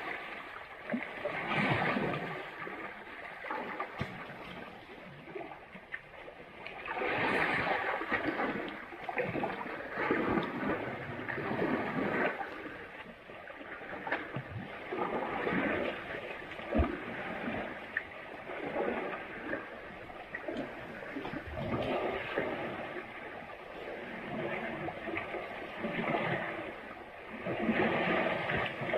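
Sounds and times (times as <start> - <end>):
elephants splashing in mud and water: 1.1 - 5.4, 6.8 - 12.8.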